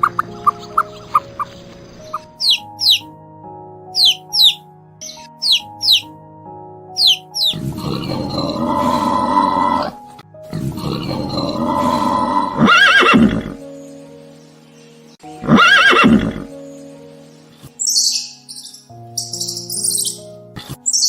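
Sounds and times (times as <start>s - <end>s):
background music: 0.0s - 21.0s
horse neighing: 7.4s - 13.6s, 15.4s - 16.5s.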